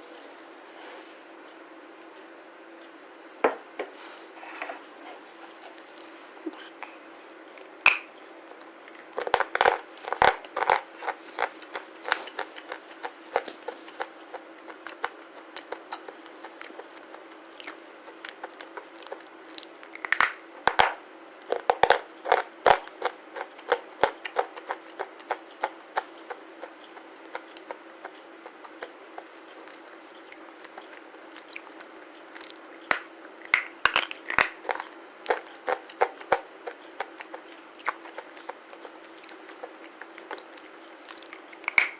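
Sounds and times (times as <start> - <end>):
slate crunching when chewed: 8.4 - 41.9.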